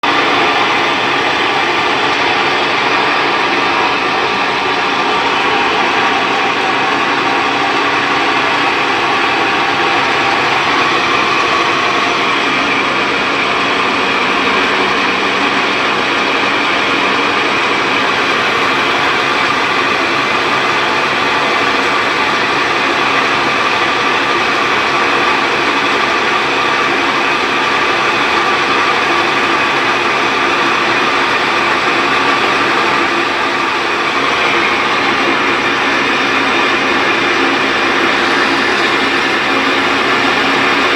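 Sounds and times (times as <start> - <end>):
washing machine mechanical noise: 0.0 - 40.9.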